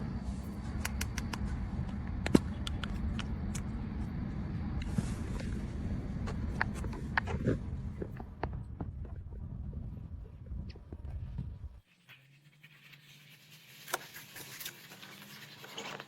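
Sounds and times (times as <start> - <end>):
low steady rumble: 0.0 - 11.8.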